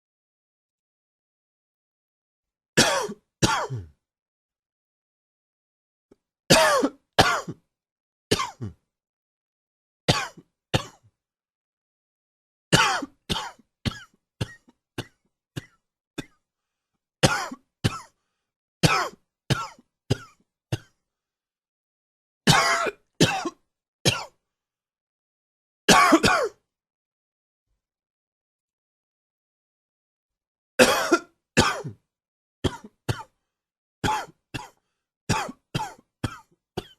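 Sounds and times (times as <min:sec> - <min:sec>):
man coughing: 0:02.8 - 0:03.9, 0:06.5 - 0:07.6, 0:08.3 - 0:08.8, 0:12.8 - 0:15.2, 0:17.2 - 0:18.1, 0:18.8 - 0:20.9, 0:22.5 - 0:24.3, 0:25.9 - 0:26.6, 0:30.8 - 0:32.0, 0:34.1 - 0:36.9.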